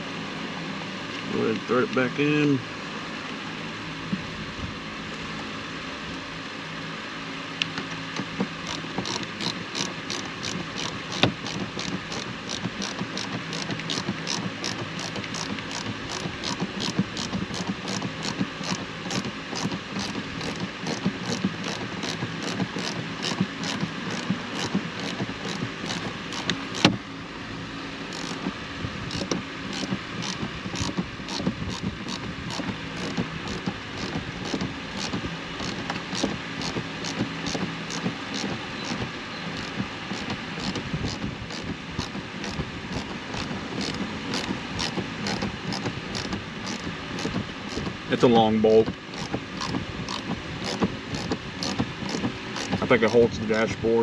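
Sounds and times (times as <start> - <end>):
steady hum: 0.0 - 54.0
hand ratchet clicking: 8.6 - 27.0, 28.1 - 28.5, 29.1 - 39.0, 39.6 - 47.9, 49.2 - 53.2.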